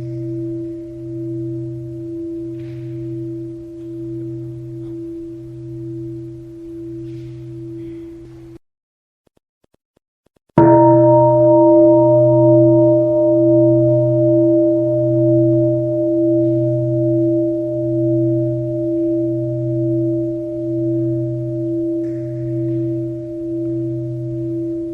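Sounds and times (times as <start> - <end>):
bell ringing: 10.6 - 21.4.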